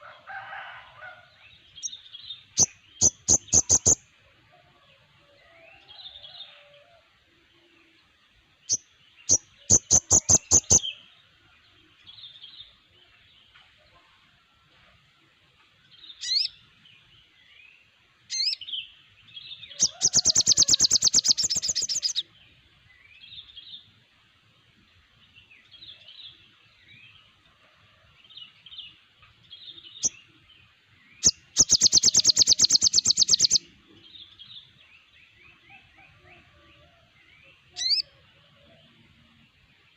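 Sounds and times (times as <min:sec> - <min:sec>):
bird chirps: 0:01.8 - 0:04.0, 0:08.6 - 0:11.1, 0:18.3 - 0:22.2, 0:31.0 - 0:36.4, 0:37.4 - 0:38.2
birds rattling trills: 0:37.8 - 0:38.0.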